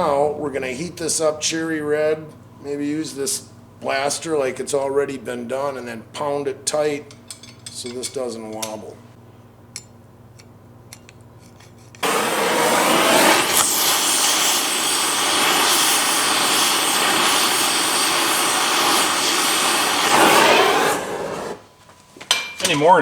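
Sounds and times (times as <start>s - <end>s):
gas torch flame hissing: 12.0s - 21.7s.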